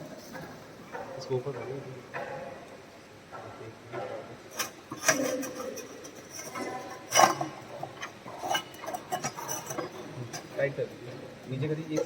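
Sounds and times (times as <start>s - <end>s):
light metal scraping: 4.5s - 11.1s.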